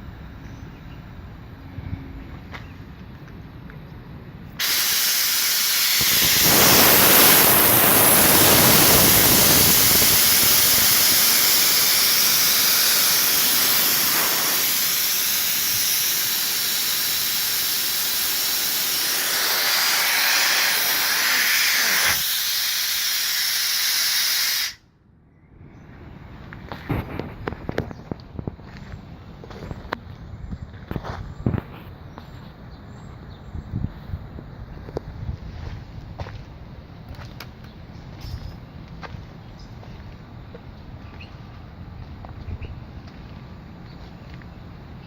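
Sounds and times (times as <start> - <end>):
compressed air hissing: 4.6 - 24.8.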